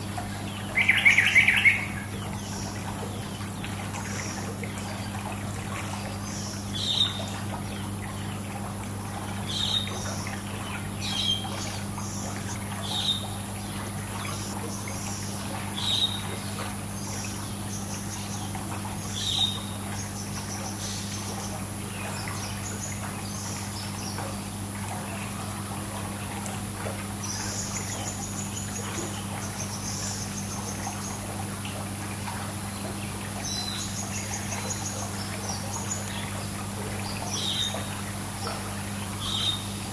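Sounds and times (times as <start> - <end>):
birds trilling: 0.0 - 25.7, 32.3 - 39.9
steady low hum: 0.0 - 39.9
trickling pool water: 0.0 - 39.9.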